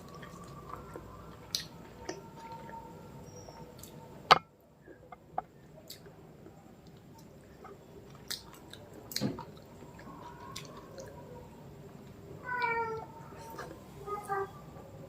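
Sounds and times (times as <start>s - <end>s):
cat meowing: 12.4s - 13.1s.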